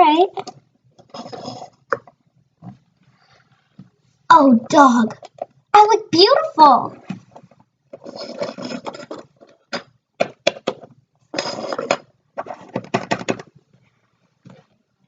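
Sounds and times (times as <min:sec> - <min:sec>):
plastic toys scraping and clattering: 0:07.0 - 0:13.5.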